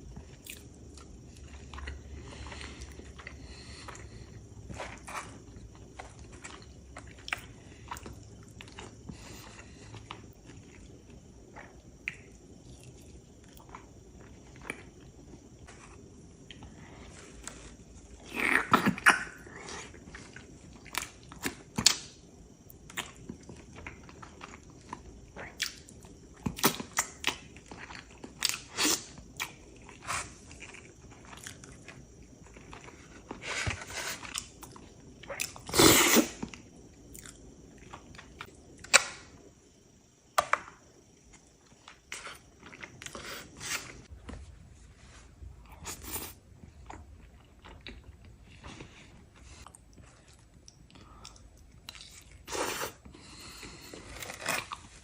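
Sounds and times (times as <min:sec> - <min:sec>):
crunchy bites: 0:50.4 - 0:55.0.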